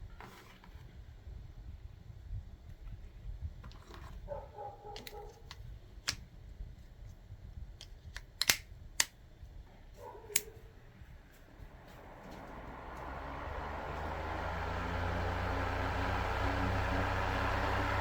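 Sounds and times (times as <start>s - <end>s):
sharp clicks: 7.8s - 9.2s.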